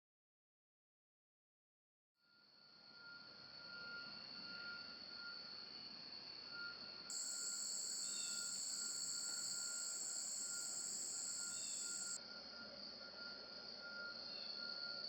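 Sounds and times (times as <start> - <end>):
insects trilling: 7.1 - 12.2
lower insect chirp: 7.1 - 12.2.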